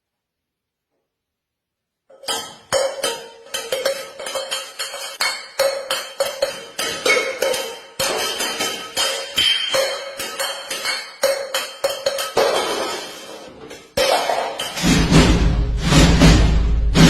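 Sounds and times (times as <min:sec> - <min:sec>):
rapid metallic clinking: 0:02.2 - 0:13.2.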